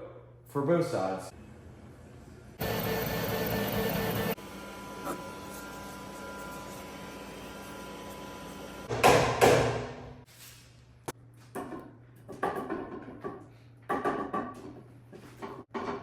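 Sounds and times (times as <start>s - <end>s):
hard objects knocking and rattling: 11.5s - 16.0s.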